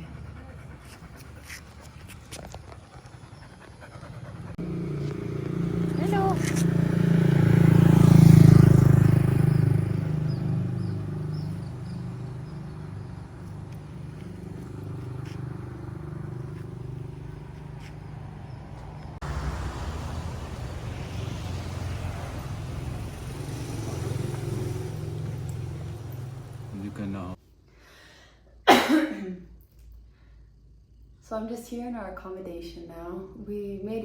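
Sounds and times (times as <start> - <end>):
vehicle engine running: 4.1 - 27.4
steady engine drone: 4.2 - 27.4.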